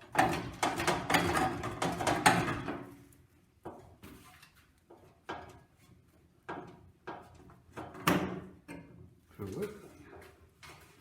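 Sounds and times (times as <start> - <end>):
metal clattering and clunking: 0.0 - 2.9.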